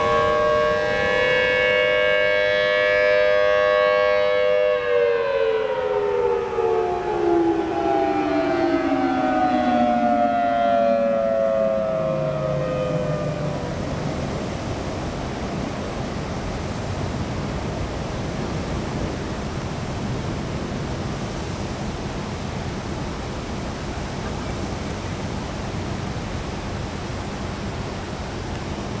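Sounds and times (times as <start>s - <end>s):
outdoor ambience rushing noise: 0.0s - 1.8s, 5.3s - 29.0s.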